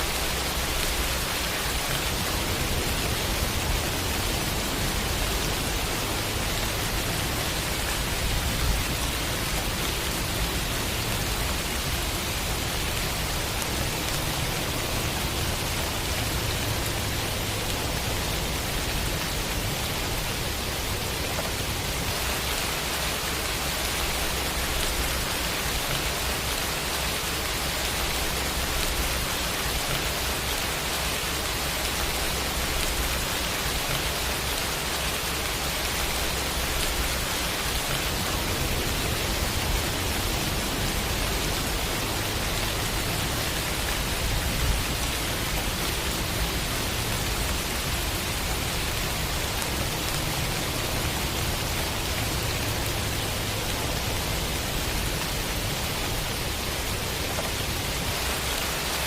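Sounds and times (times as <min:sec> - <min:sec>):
steady rain hiss: 0:00.0 - 0:59.0.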